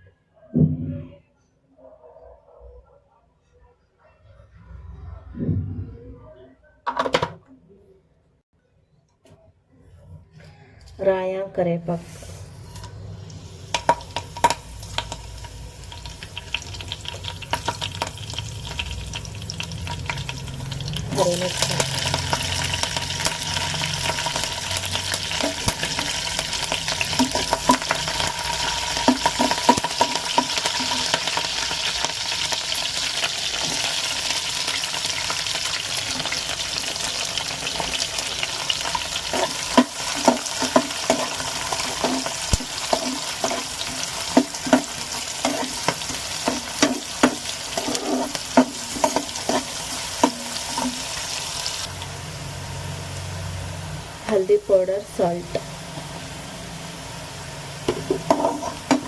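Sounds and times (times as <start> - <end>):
spices sizzling in hot oil: 12.2 - 59.0
spatula scraping pan: 20.9 - 32.1, 36.0 - 51.9, 57.8 - 59.0.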